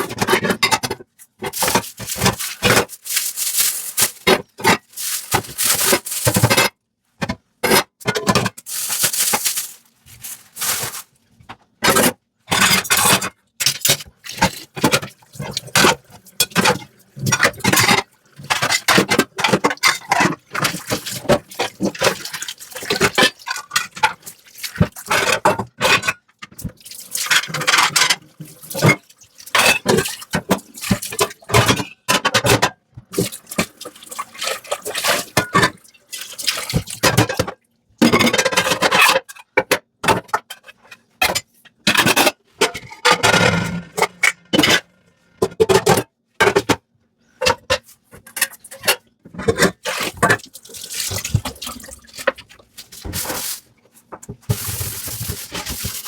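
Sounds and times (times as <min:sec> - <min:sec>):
sponge scrubbing dishware: 0:01.4 - 0:06.7, 0:49.6 - 0:53.7, 0:54.4 - 0:56.0.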